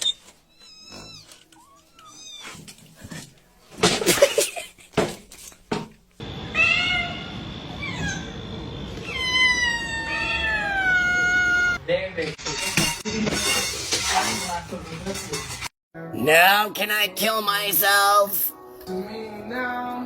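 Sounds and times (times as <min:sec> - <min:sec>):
cat meowing: 0:00.6 - 0:02.6, 0:06.5 - 0:08.3, 0:09.0 - 0:11.8.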